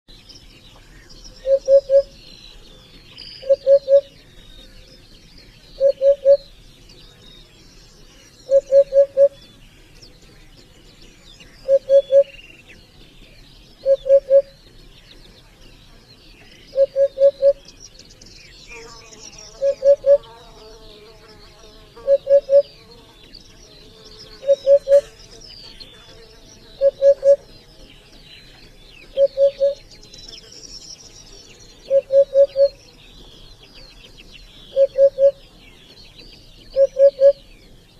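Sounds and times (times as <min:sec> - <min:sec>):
faint high chirping: 0:00.2 - 0:02.2, 0:03.0 - 0:09.6, 0:13.2 - 0:14.8, 0:16.7 - 0:18.1, 0:18.7 - 0:27.5, 0:28.4 - 0:33.2, 0:33.9 - 0:35.4, 0:36.2 - 0:37.5
bird calling low pure notes: 0:00.7 - 0:02.3, 0:03.1 - 0:05.0, 0:05.8 - 0:06.5, 0:08.4 - 0:09.5, 0:11.4 - 0:12.5, 0:13.8 - 0:14.6, 0:16.5 - 0:17.8, 0:18.8 - 0:20.4, 0:22.0 - 0:22.8, 0:24.2 - 0:25.1, 0:26.7 - 0:28.4, 0:29.0 - 0:31.0, 0:31.8 - 0:33.8, 0:34.6 - 0:35.5, 0:36.6 - 0:37.6
insects buzzing: 0:18.7 - 0:33.2.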